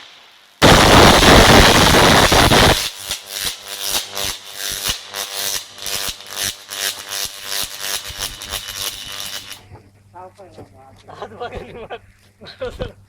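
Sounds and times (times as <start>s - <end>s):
electrical arcing crackle: 0.0s - 9.6s
faint electrical hum: 0.0s - 13.0s.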